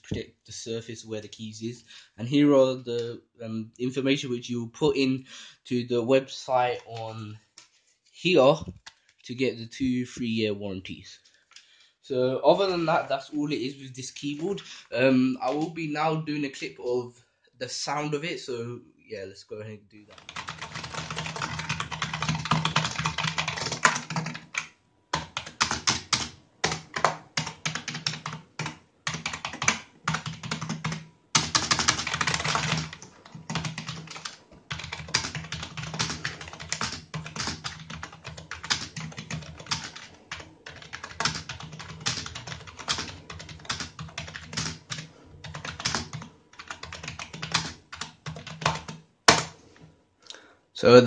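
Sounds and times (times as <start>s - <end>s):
mechanical keyboard typing: 20.1s - 49.5s.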